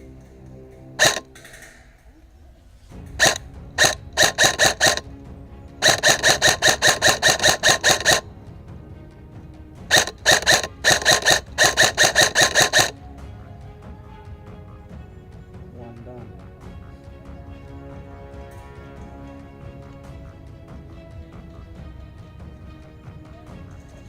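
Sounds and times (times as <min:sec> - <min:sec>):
background music: 0:00.0 - 0:24.0
airsoft rifle shots: 0:01.0 - 0:01.9, 0:03.2 - 0:05.1, 0:05.8 - 0:08.3, 0:09.9 - 0:13.0.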